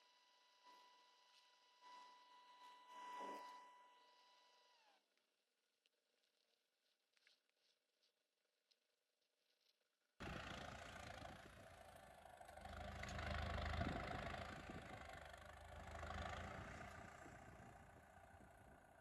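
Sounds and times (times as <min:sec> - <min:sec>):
vehicle engine running: 0:10.2 - 0:19.0.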